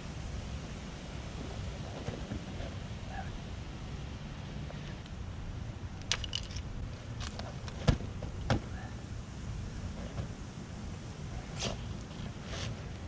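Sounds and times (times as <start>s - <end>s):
wind rumble on microphone: 0.0s - 13.0s
clicks and knocks of gear handled: 6.0s - 7.9s.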